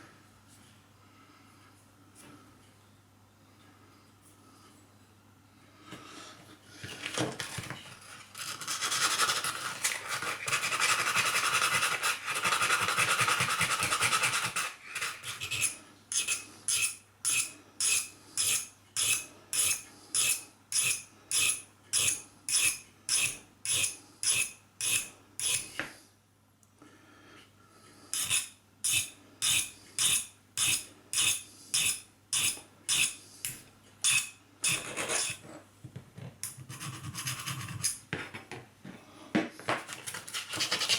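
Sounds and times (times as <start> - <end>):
back-and-forth filing strokes: 8.4 - 25.8, 28.1 - 35.4, 36.5 - 38.0, 39.8 - 40.9
file scraping steel: 8.5 - 25.8, 28.1 - 33.2, 34.0 - 35.5, 39.8 - 40.9.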